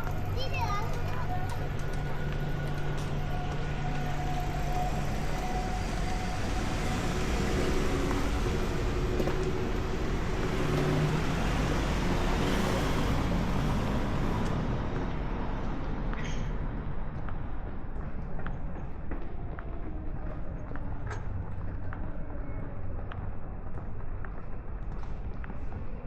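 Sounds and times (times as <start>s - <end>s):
vehicle passing by: 5.0s - 16.0s.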